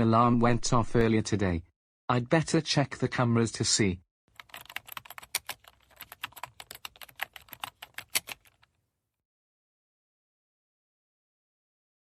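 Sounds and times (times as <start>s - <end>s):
typing on computer keyboard: 4.3s - 8.7s.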